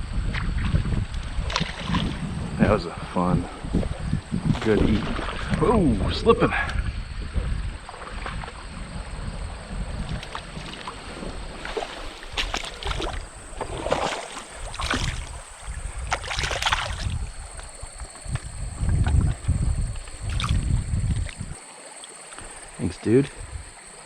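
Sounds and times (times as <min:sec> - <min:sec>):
wind buffeting microphone: 0:00.0 - 0:21.6, 0:22.4 - 0:23.9
stream water splashing: 0:01.4 - 0:06.1, 0:09.6 - 0:24.0.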